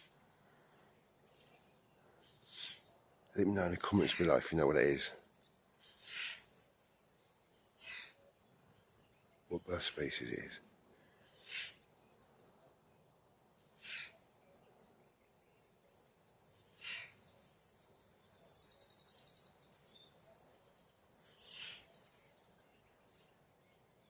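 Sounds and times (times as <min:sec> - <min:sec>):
bird calling: 0:00.0 - 0:00.7, 0:01.4 - 0:03.1, 0:03.7 - 0:05.1, 0:05.7 - 0:08.4, 0:11.0 - 0:12.0, 0:13.6 - 0:14.5, 0:16.5 - 0:22.4
high bird trill: 0:05.8 - 0:08.3, 0:13.6 - 0:14.4, 0:16.5 - 0:22.4.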